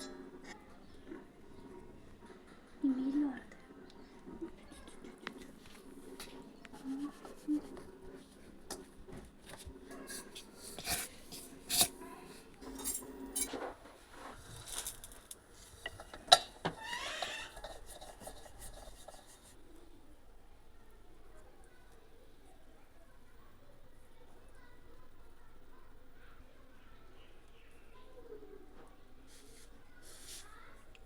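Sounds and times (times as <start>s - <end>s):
utensils and dishes clinking: 0.0s - 0.6s, 9.9s - 13.6s, 14.6s - 19.5s.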